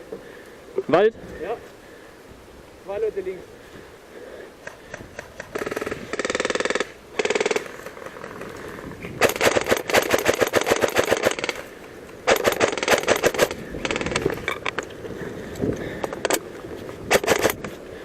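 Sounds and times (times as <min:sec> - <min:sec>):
airsoft guns firing bursts: 0:04.8 - 0:08.0, 0:09.2 - 0:14.4, 0:17.1 - 0:17.7.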